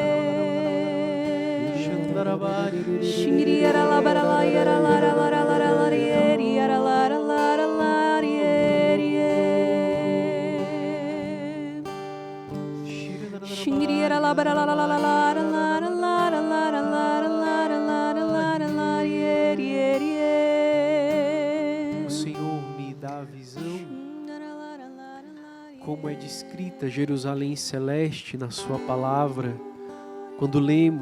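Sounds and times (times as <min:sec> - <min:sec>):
person singing with vibrato: 0:00.0 - 0:12.1, 0:13.0 - 0:22.6, 0:29.4 - 0:31.0
acoustic guitar: 0:00.0 - 0:31.0.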